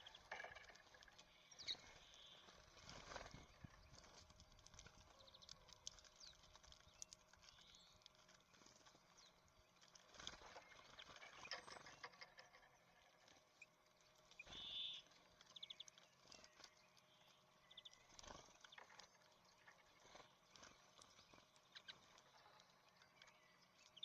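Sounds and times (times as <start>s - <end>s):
birds pecking seeds: 0.0s - 24.0s
short high bird chirps: 14.5s - 15.0s.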